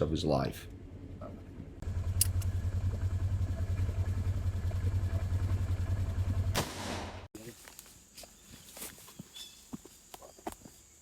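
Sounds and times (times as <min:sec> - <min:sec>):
engine idling: 0:00.6 - 0:07.3.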